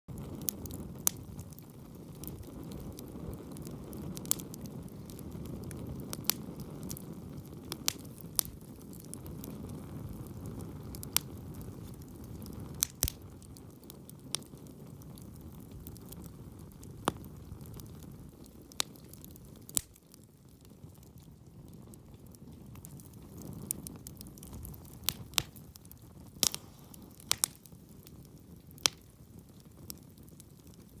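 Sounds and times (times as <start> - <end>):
burning wood crackling and popping: 0.1 - 31.0
campfire flame rushing: 0.1 - 31.0.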